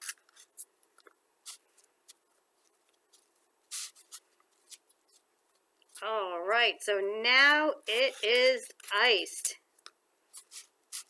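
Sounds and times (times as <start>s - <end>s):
utensil scraping icing on waffle: 1.4s - 1.7s, 3.2s - 4.9s, 10.3s - 11.0s.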